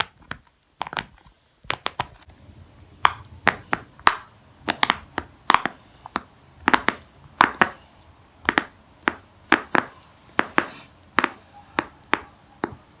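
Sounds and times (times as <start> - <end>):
pop-it toy bubbles popping: 3.0 - 7.8, 8.4 - 10.6.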